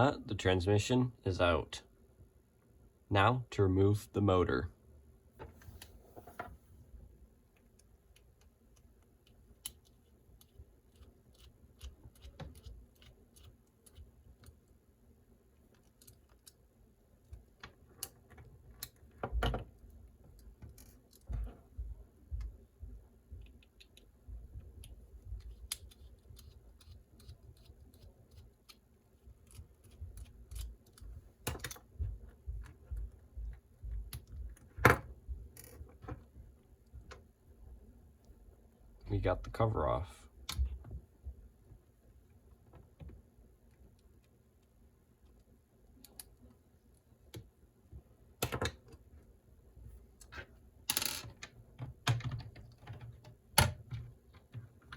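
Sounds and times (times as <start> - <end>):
small parts clicking and tapping: 7.5 - 14.8, 15.6 - 37.3, 42.6 - 47.6, 50.2 - 54.9.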